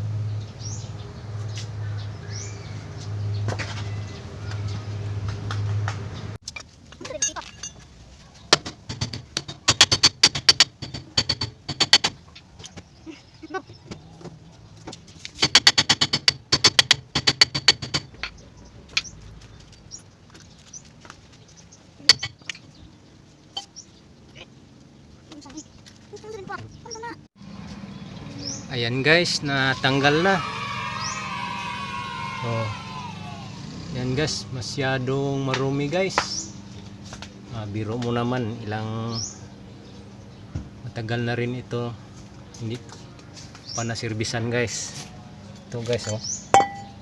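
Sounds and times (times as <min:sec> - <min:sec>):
hammer striking brake drum: 0:46.6 - 0:47.0.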